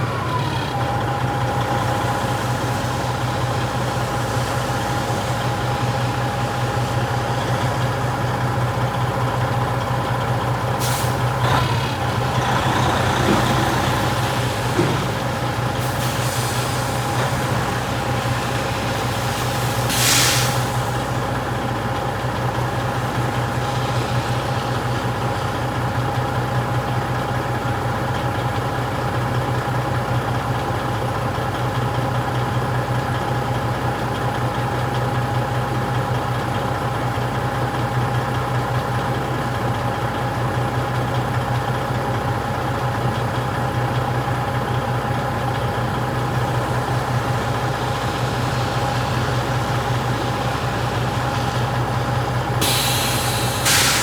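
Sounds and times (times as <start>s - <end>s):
truck diesel engine running: 0.0s - 54.0s
air brake hisses: 10.8s - 21.2s, 46.4s - 54.0s.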